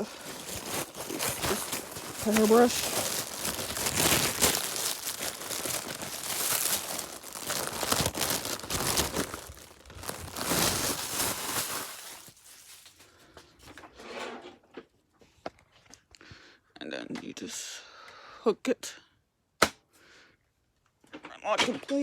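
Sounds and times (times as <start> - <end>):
plastic packaging crinkling: 0.0 - 13.1.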